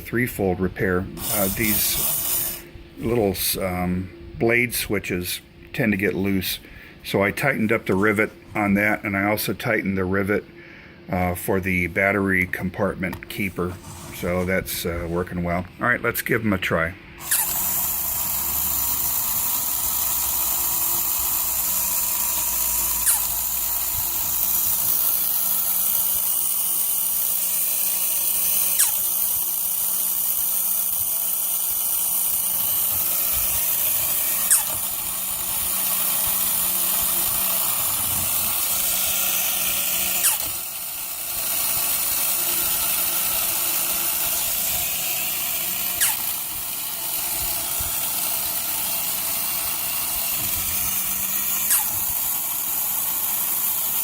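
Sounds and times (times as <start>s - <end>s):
toy motor whirring: 1.2s - 3.2s, 17.2s - 54.0s
sharp mechanism click: 28.3s - 40.8s, 41.4s - 46.5s, 49.8s - 54.0s.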